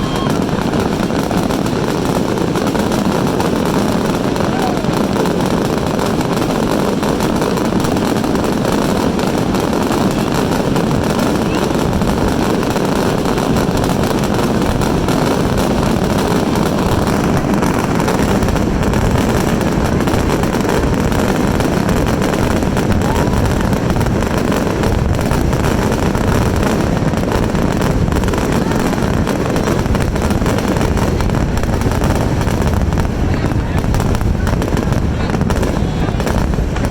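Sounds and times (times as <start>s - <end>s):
fireworks bursting and crackling: 0.0s - 36.9s.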